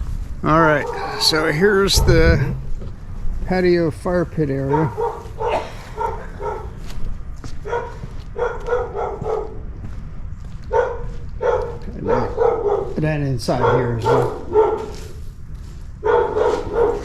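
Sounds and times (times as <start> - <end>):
dog barking: 0.6 - 1.6, 4.7 - 6.8, 7.6 - 9.6, 10.7 - 15.1, 16.0 - 17.0
low steady rumble: 1.0 - 3.6.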